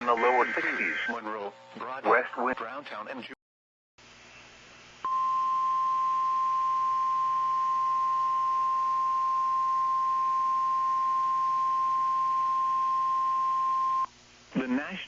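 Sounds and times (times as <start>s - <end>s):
steady high alarm tone: 5.1s - 14.1s.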